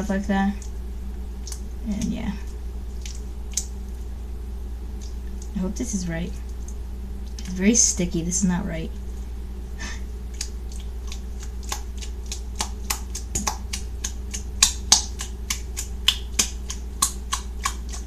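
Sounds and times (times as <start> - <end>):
low hum: 0.0 - 18.0.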